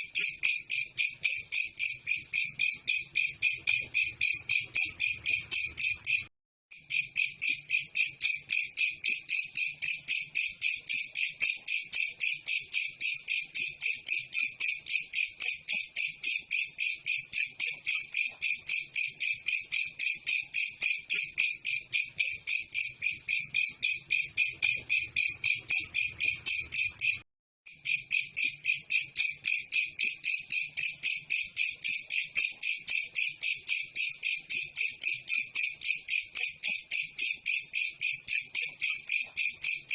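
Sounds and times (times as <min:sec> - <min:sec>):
katydid chirping: 0:00.5 - 0:06.3, 0:21.4 - 0:27.2.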